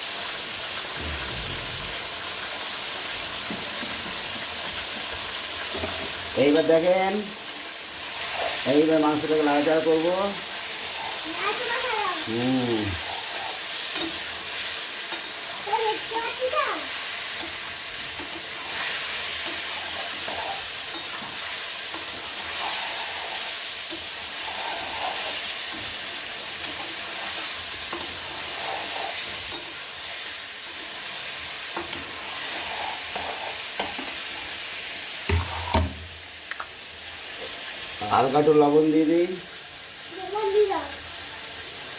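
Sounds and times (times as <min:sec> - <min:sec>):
chicken sizzling in hot oil: 0:00.0 - 0:41.9
utensil scraping and clicking on pan: 0:13.8 - 0:14.3, 0:17.3 - 0:22.8, 0:26.6 - 0:29.8, 0:31.7 - 0:34.2.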